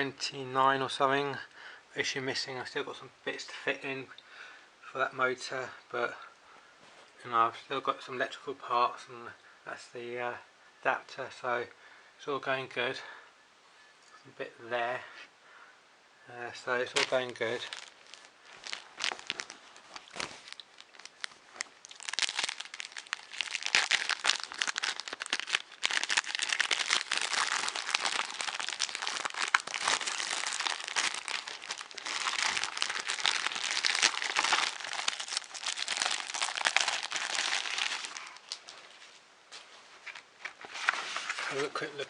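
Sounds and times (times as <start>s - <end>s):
plastic packaging crinkling: 16.8s - 39.0s.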